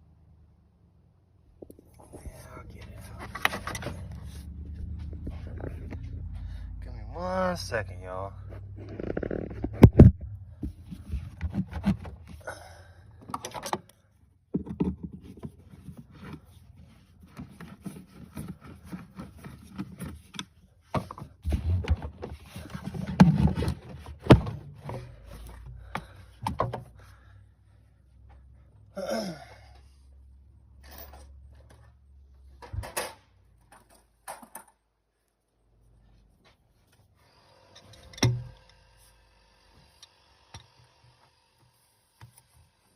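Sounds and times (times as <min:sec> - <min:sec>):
low rumble: 0:01.6 - 0:07.2.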